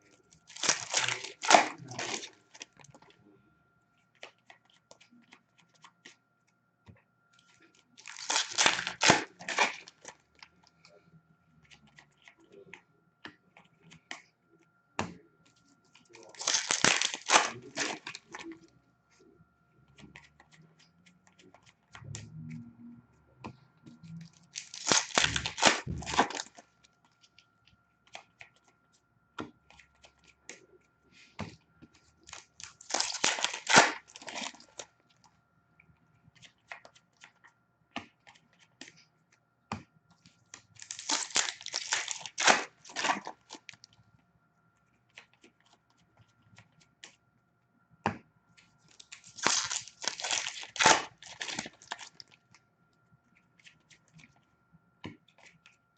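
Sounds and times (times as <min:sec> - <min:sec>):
cards clicking and rustling: 0:00.4 - 0:03.0, 0:07.7 - 0:10.2, 0:16.0 - 0:18.6, 0:24.4 - 0:26.6, 0:31.4 - 0:34.8, 0:39.7 - 0:43.9, 0:48.9 - 0:52.4
wrappers ripping and crinkling: 0:00.5 - 0:02.6, 0:08.0 - 0:10.1, 0:16.2 - 0:18.5, 0:24.4 - 0:26.6, 0:32.2 - 0:34.8, 0:40.8 - 0:43.8, 0:48.9 - 0:52.3.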